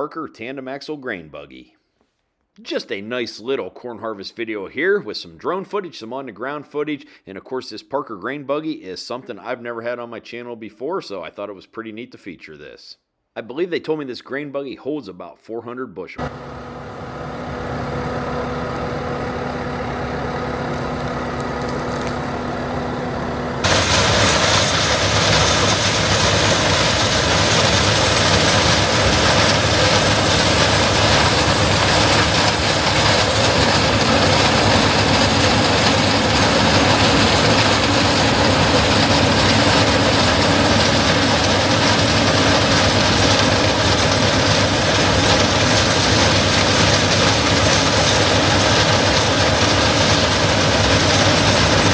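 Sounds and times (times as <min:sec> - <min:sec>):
diesel harvester engine hum: 0:16.2 - 0:51.9.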